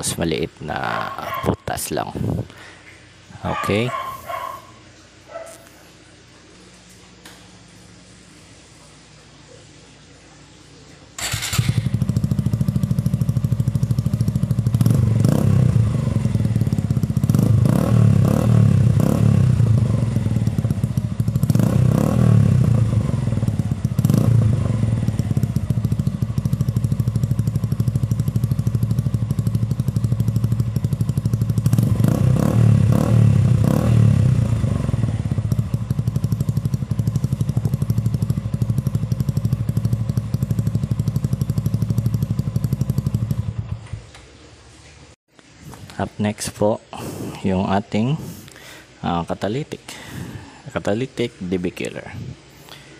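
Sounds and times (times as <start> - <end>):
motorcycle engine idling and revving: 11.2 - 44.5.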